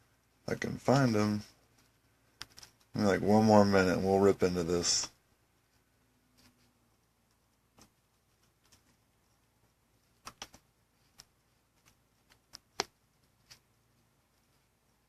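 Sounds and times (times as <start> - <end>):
faint clicks and taps: 0.9 - 3.0, 5.6 - 15.0.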